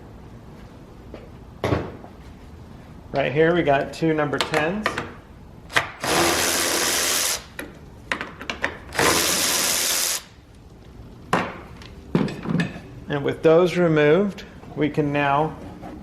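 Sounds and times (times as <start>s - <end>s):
power tool running: 5.7s - 7.5s, 8.9s - 10.4s.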